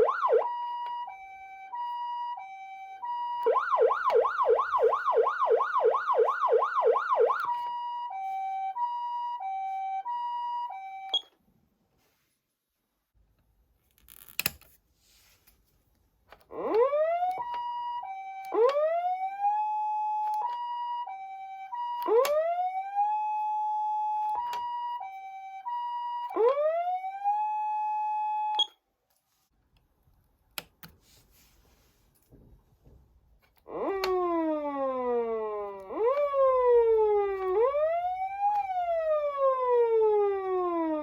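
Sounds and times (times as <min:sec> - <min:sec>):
electronic siren wail and two-tone: 0:00.0 - 0:11.3, 0:16.5 - 0:28.8, 0:33.7 - 0:41.0.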